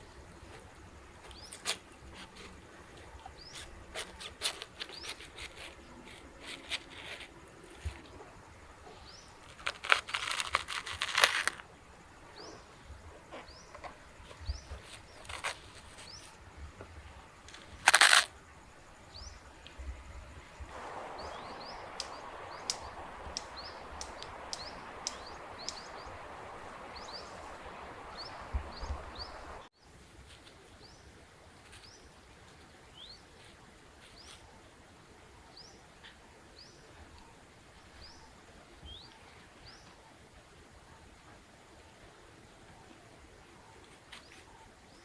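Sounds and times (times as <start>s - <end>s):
small birds chirping: 0.0s - 32.3s, 32.9s - 34.7s, 35.4s - 40.2s, 42.7s - 45.0s
steady rushing noise: 15.7s - 29.7s.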